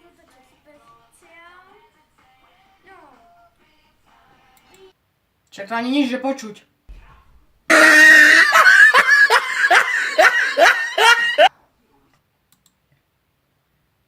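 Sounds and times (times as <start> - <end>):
loud high-pitched laughter: 7.7 - 11.5.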